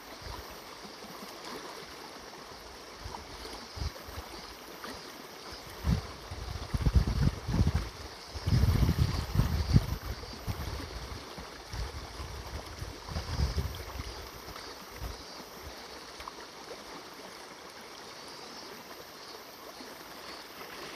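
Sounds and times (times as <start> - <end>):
river water flowing: 0.0 - 20.9
cicadas shrilling: 2.1 - 20.9
wind buffeting microphone: 5.8 - 14.3.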